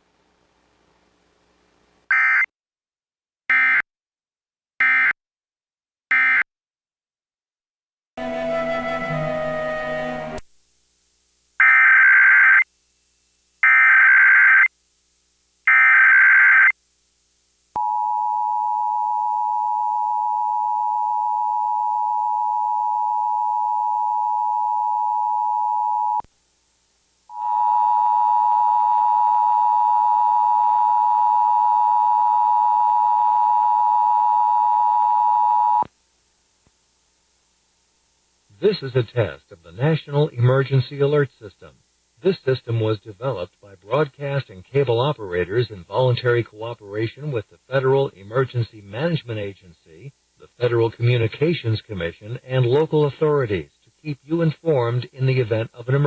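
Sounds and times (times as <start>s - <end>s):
noise hiss: 0.0s - 2.1s, 38.6s - 56.0s.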